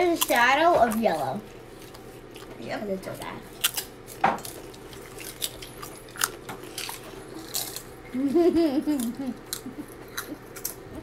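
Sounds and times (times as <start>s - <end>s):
crunchy snack chewing: 3.2s - 8.0s, 8.9s - 10.9s.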